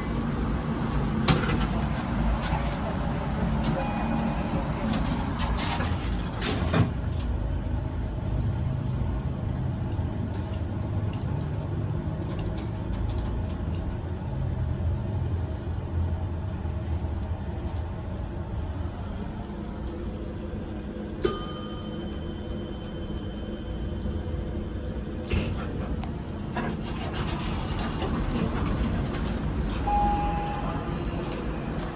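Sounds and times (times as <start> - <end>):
elevator hum and rumble: 0.0 - 31.9
ringing tone: 21.2 - 24.7.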